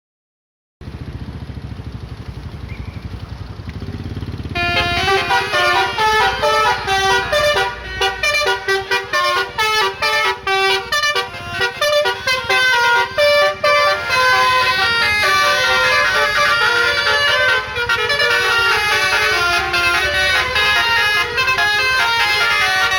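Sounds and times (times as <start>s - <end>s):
bus engine rumbling: 0.8s - 22.9s
multi-tone bus horn tune: 4.5s - 22.9s.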